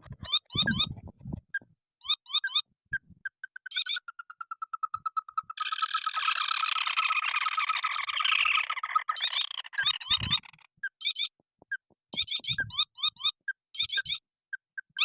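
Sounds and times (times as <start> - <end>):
birds chattering chorus: 3.5 - 11.2.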